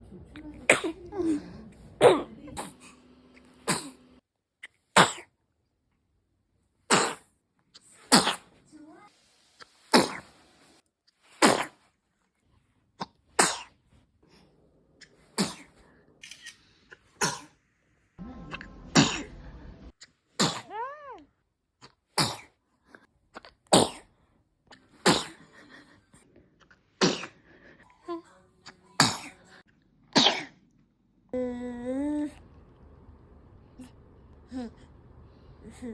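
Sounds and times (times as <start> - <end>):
person sneezing: 6.9 - 7.3, 8.0 - 8.5, 11.4 - 11.8.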